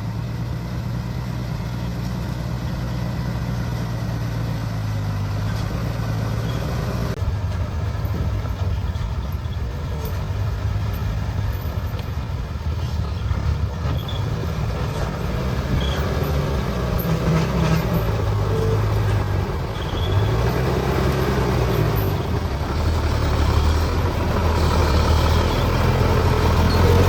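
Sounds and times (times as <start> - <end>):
diesel engine running: 0.0 - 27.0.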